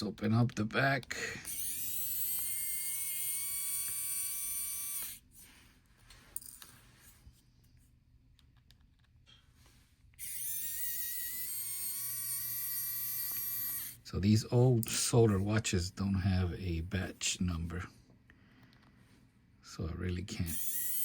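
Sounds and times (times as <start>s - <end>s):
small electric motor whining: 1.4s - 5.4s, 10.2s - 14.0s, 20.4s - 21.0s.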